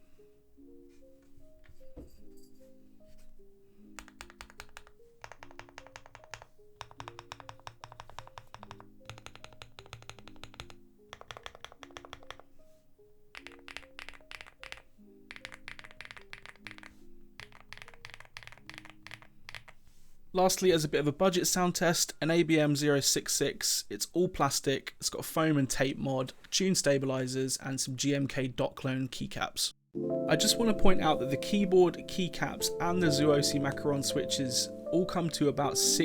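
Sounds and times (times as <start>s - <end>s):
soft background music: 0.0s - 28.3s, 29.9s - 36.0s
keyboard keys clacking: 3.9s - 12.6s, 13.3s - 19.8s, 30.0s - 36.0s.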